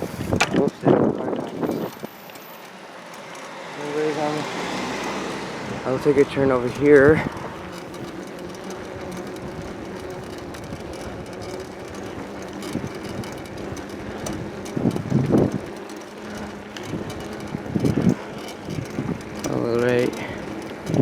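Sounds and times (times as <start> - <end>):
wind on microphone: 0.0 - 2.2, 8.9 - 15.8, 16.4 - 21.0
bicycle rolling and rattling: 0.0 - 21.0.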